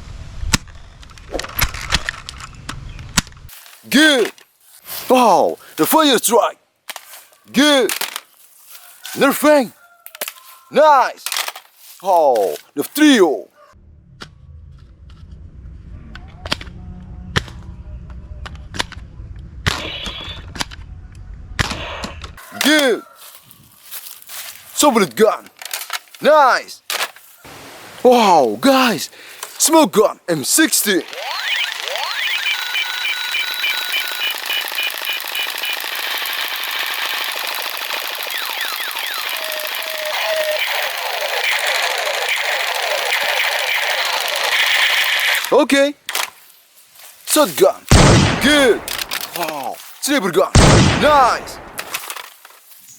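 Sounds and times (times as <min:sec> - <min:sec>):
toy machine-gun rattle: 0:31.0 - 0:45.5
electronic pitch sweeps: 0:31.1 - 0:35.2
short beeps: 0:31.2 - 0:35.8
toy gun firing sharp cracks: 0:33.8 - 0:41.0, 0:47.9 - 0:49.5, 0:50.6 - 0:52.4.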